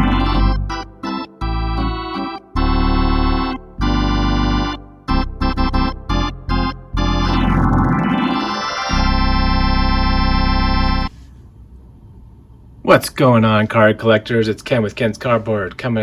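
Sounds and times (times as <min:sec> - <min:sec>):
electronic keyboard chords: 0:00.0 - 0:11.1.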